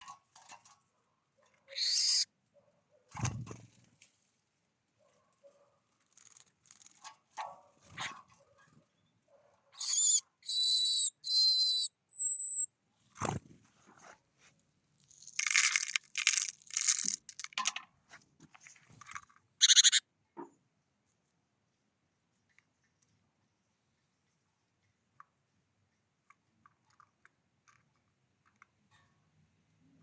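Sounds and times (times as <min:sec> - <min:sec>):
thin bird whistle: 0:01.7 - 0:02.3, 0:09.8 - 0:12.7.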